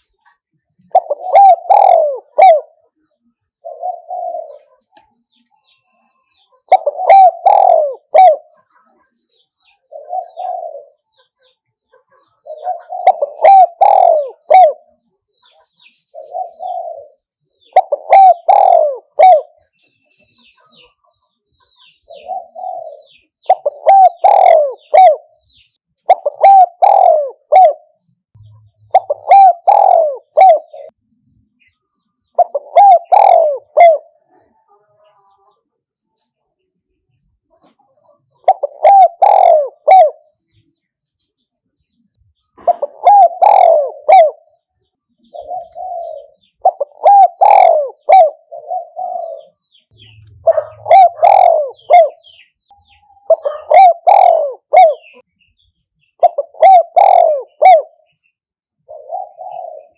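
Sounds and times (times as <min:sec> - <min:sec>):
dove cooing: 0:00.8 - 0:02.9, 0:03.6 - 0:05.0, 0:06.3 - 0:08.7, 0:09.9 - 0:11.3, 0:12.2 - 0:19.8, 0:22.0 - 0:31.0, 0:32.3 - 0:34.5, 0:37.6 - 0:40.4, 0:42.6 - 0:44.6, 0:45.2 - 0:55.2, 0:56.2 - 0:59.9.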